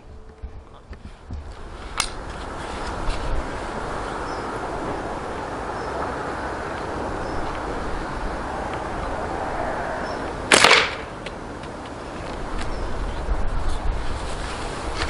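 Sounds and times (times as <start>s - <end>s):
steady background noise: 0.0s - 15.0s
rubber bands snapping crack: 10.5s - 11.4s.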